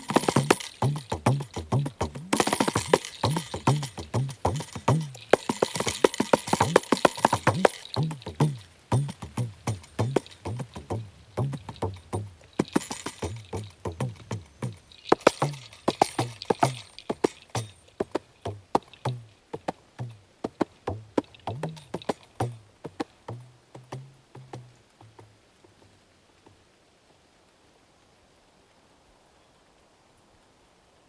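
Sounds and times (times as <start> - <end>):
jingle rattle: 0.0 - 19.4, 21.2 - 22.7
frame drum strokes: 0.0 - 25.2.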